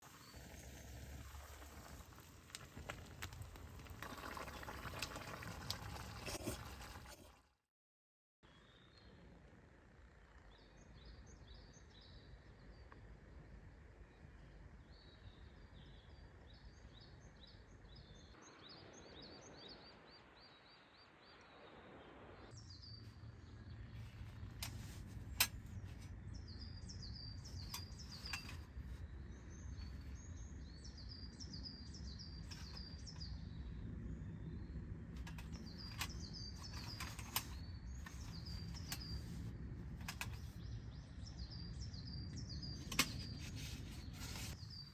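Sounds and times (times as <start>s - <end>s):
low outdoor rumble: 21.8s - 44.9s
small birds chirping: 22.5s - 44.9s.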